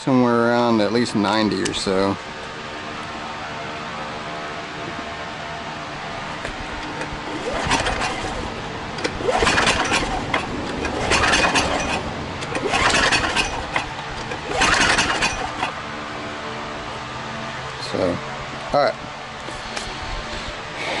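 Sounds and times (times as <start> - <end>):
engine pull-starter cranking: 6.4 - 15.8.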